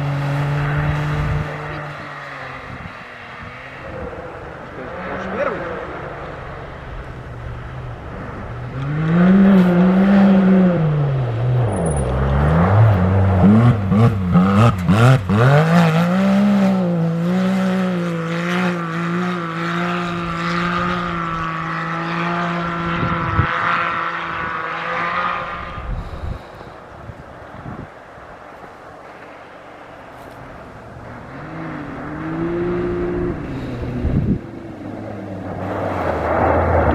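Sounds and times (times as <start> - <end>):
vehicle engine revving hard: 12.2 - 26.4, 31.3 - 36.9.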